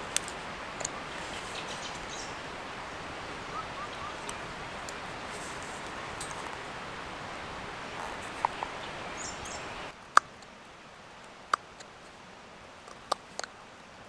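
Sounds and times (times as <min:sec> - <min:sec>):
rushing outdoor background: 0:00.0 - 0:10.0.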